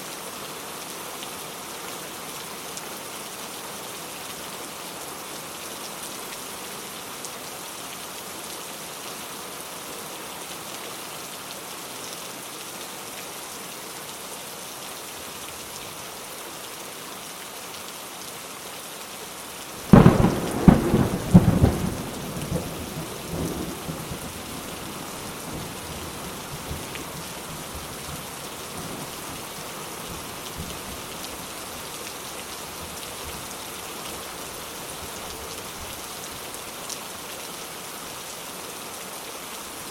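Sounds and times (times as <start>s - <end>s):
steady rain falling: 0.0s - 39.9s
thunderclap rumbling: 19.9s - 24.2s.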